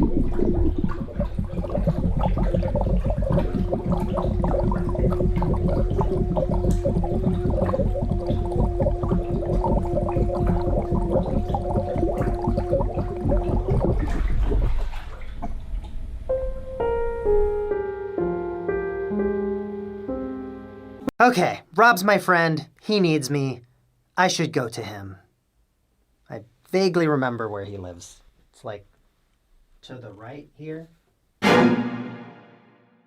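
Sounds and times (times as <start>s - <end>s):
gurgling bubbles: 0.0s - 16.0s
person singing underwater: 3.3s - 14.4s.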